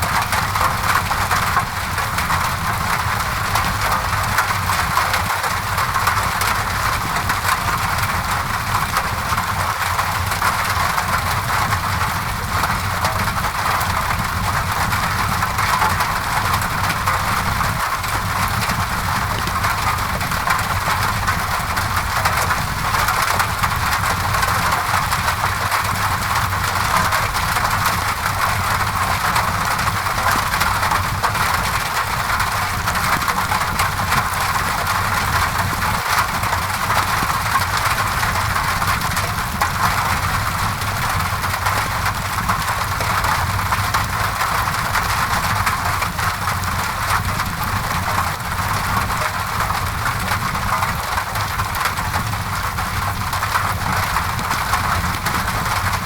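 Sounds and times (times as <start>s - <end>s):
rain on a window: 0.0s - 56.0s.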